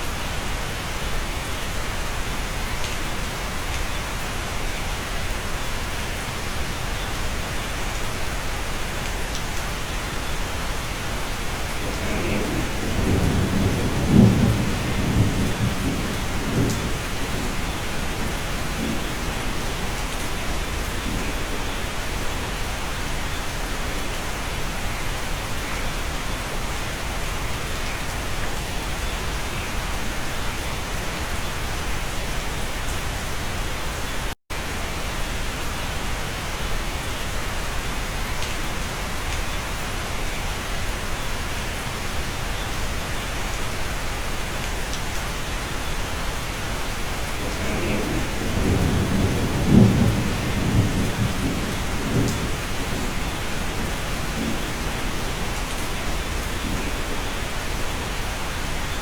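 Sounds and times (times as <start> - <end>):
steady rain: 0.0 - 59.0
low rumble of thunder: 11.0 - 22.4, 46.8 - 58.8.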